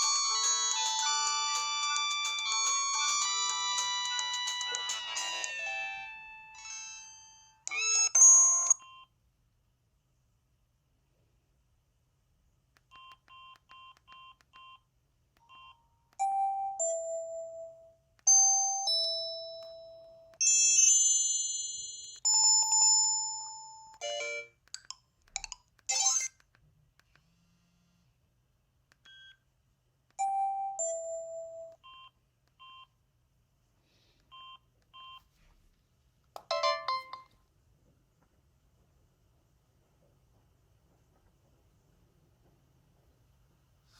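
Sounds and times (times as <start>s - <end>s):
bell-like ringtone notes: 0.0s - 8.8s, 16.2s - 24.5s, 36.5s - 37.3s.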